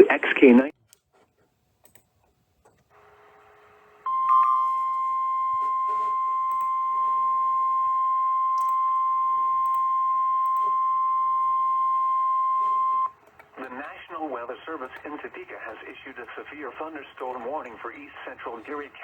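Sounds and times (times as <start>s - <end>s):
steady high alarm tone: 4.0s - 13.2s.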